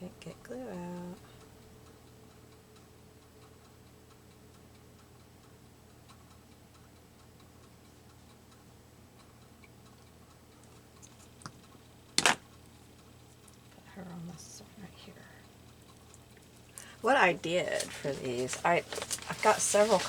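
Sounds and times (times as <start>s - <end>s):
low steady hum: 0.0s - 20.0s
faint light ticks: 0.9s - 13.9s, 17.8s - 20.0s.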